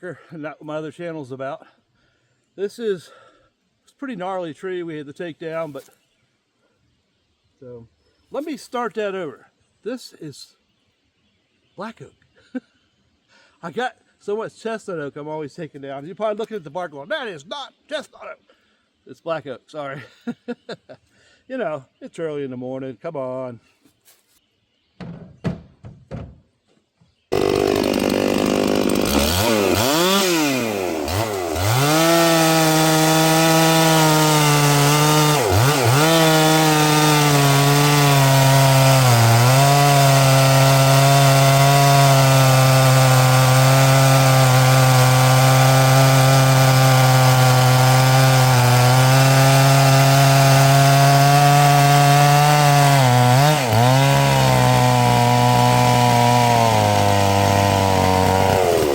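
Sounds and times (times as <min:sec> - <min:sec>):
chainsaw cutting log: 0:27.3 - 0:58.9.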